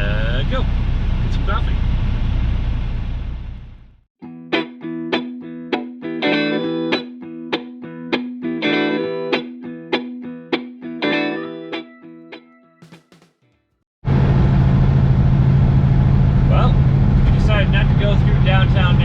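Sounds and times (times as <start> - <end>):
plucked guitar music with beat: 4.2 - 13.5.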